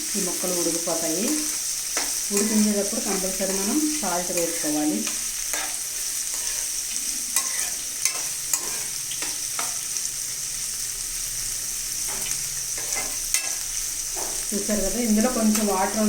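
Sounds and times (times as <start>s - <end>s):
beans sizzling in oil: 0.0s - 16.0s.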